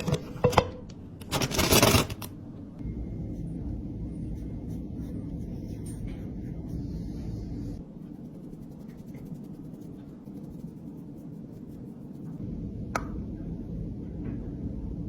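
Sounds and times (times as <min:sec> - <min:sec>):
steady low rumble: 0:02.3 - 0:15.0
light rapid scratching and rubbing: 0:04.3 - 0:12.4.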